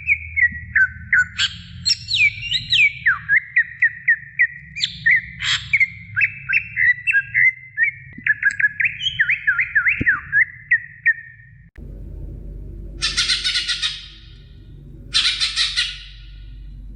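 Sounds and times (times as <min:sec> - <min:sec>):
bird whistled song: 0:00.0 - 0:11.6
harsh bird chirp: 0:00.0 - 0:11.6, 0:13.0 - 0:16.8.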